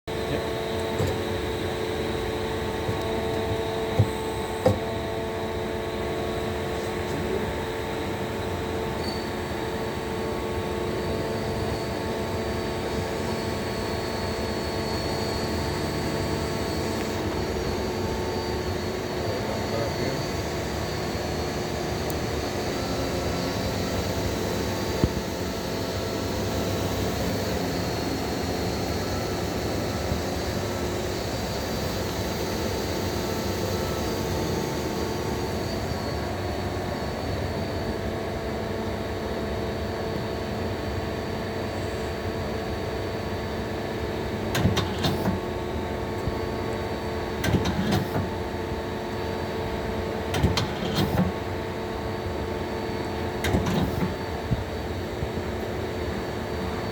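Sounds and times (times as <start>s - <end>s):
lathe machine hum: 0.1s - 56.9s
machine clicks and clunks: 44.5s - 45.5s, 47.4s - 48.4s, 50.3s - 51.4s, 53.4s - 54.2s.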